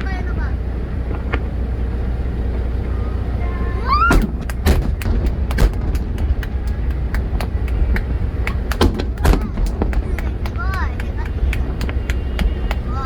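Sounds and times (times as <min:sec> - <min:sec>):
fireworks bangs and crackles: 0:04.0 - 0:13.0.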